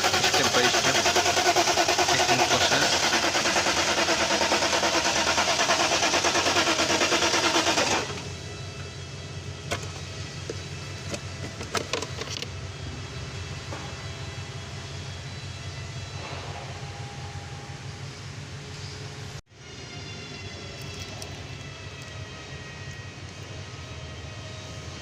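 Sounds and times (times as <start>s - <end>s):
car engine running: 0.0s - 9.0s.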